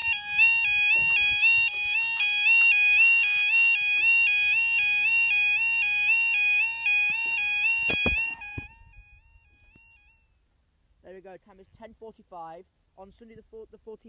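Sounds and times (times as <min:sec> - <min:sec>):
level crossing two-tone alarm: 0:00.0 - 0:10.2.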